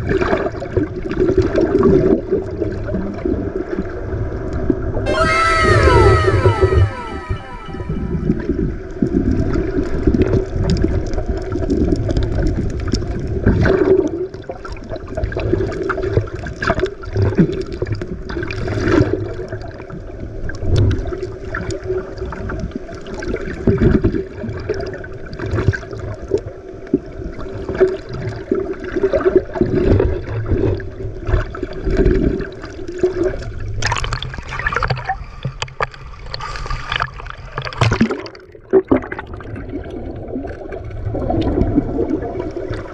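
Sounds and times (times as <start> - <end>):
boat engine drone: 5.1 - 8.6.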